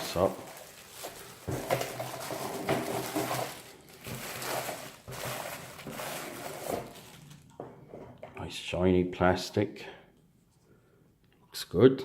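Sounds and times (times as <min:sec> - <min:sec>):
plastic packaging crinkling: 0:00.0 - 0:07.7.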